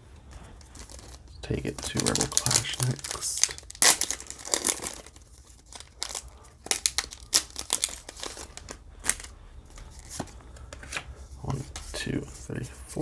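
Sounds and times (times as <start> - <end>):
foil wrapper crinkling and tearing: 0.6 - 10.1.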